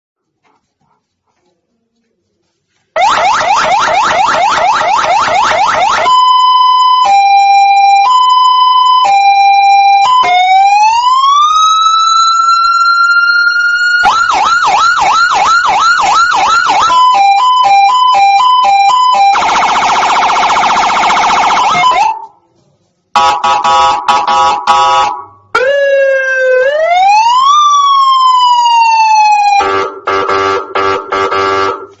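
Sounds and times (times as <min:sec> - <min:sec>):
electronic police siren: 0:03.0 - 0:22.3, 0:23.2 - 0:31.9.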